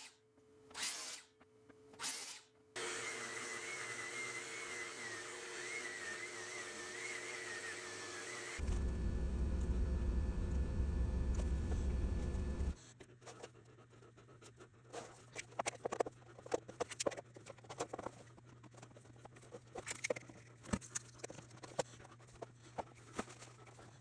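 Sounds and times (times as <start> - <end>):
faint low hum: 8.6 - 12.8
loud low rumble: 8.6 - 12.8.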